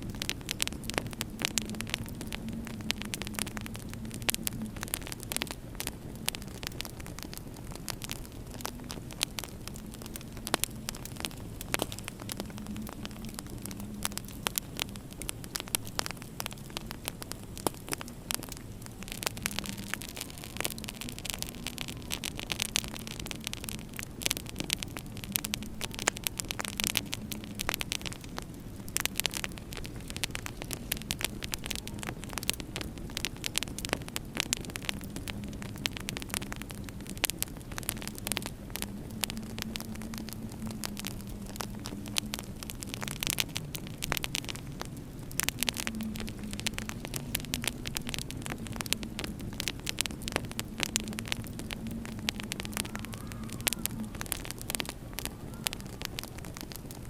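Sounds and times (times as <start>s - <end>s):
howling winter wind: 0.0s - 57.0s
wood fire crackling and popping: 0.0s - 57.0s.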